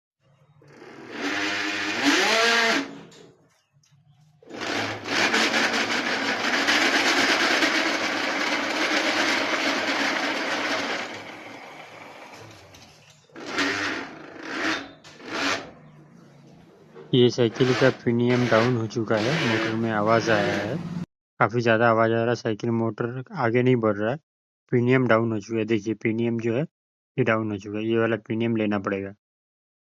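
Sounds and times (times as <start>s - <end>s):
hub motor grinding whir: 0.6s - 3.1s, 4.4s - 16.5s, 17.4s - 21.1s.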